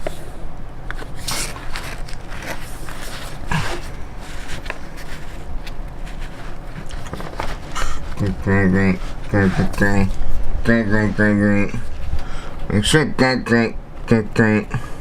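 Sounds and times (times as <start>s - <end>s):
steady low hum: 0.0s - 15.0s
toolkit packaging clicks and rustles: 0.9s - 7.8s.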